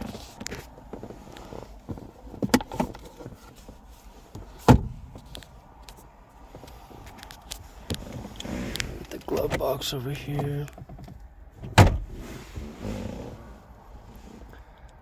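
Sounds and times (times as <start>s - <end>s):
loud thump: 11.7s - 12.1s.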